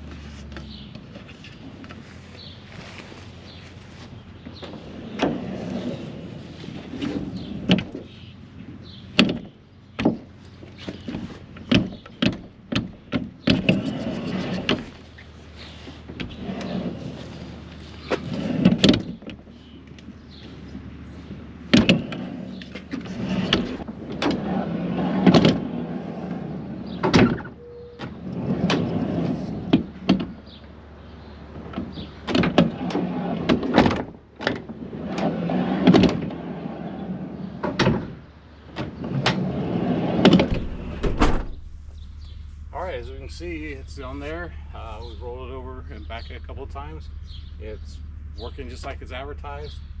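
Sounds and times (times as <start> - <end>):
sliding van door rolling: 4.6 - 8.1, 10.8 - 19.7, 20.4 - 30.6, 31.2 - 42.2
door clunking to a stop: 37.6 - 42.0.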